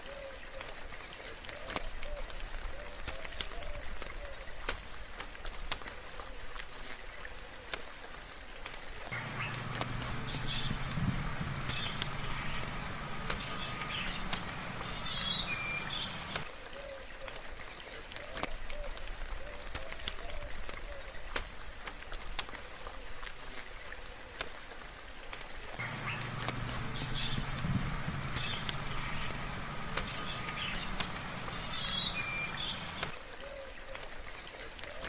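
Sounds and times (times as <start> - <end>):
rain: 0.0 - 35.0
sharp drips: 8.6 - 16.5, 23.3 - 33.2
birds chirping: 9.1 - 16.4, 25.8 - 33.2
low background hum: 9.1 - 16.5, 25.8 - 33.2.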